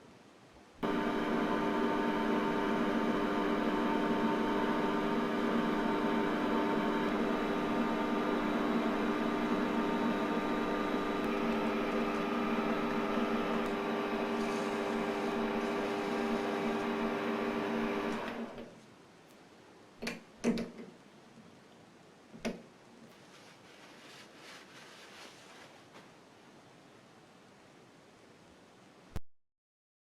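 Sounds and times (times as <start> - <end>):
machine humming and whirring: 0.8 - 18.7.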